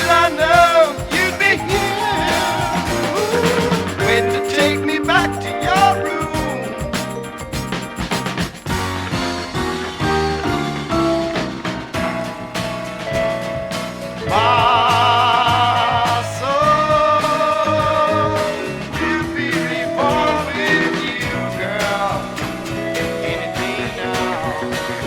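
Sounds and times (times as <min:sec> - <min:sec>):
lead instrument with vibrato: 0:00.0 - 0:14.7
jazz-rock band backing: 0:00.0 - 0:25.0
regular drum beat: 0:00.0 - 0:25.0.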